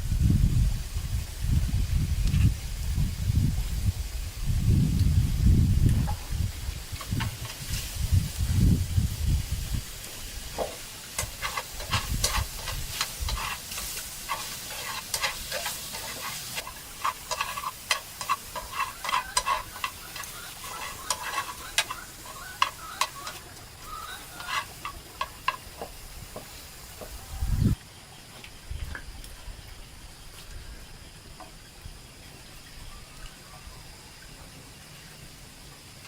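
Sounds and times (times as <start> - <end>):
food sizzling: 0.8 - 27.8
utensil scraping a pan: 6.0 - 8.0, 10.1 - 27.1.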